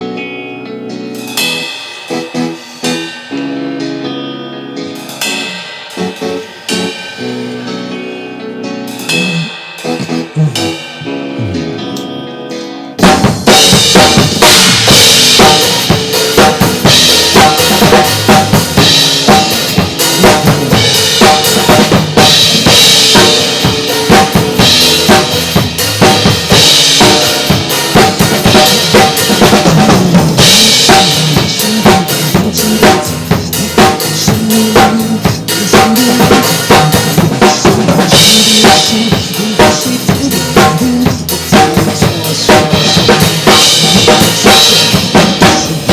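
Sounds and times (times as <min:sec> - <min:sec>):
live drum kit beat: 0:00.0 - 0:45.9
recorded pop backing track: 0:00.0 - 0:45.9
soft guitar passage: 0:02.3 - 0:13.1.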